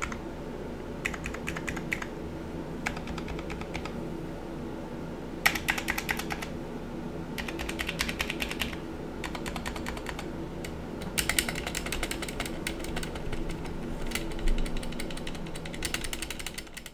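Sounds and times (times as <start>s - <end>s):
fan humming: 0.0s - 16.9s
mechanical keyboard keys clacking: 1.0s - 2.1s, 2.8s - 3.9s, 5.5s - 6.5s, 7.4s - 16.9s.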